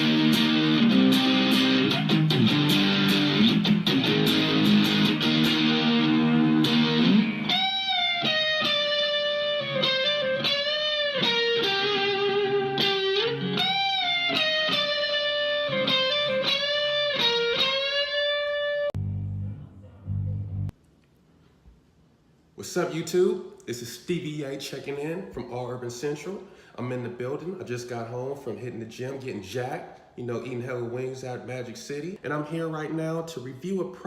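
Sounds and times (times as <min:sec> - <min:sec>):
electric guitar playing: 0:00.0 - 0:20.7
low hum: 0:19.0 - 0:20.8.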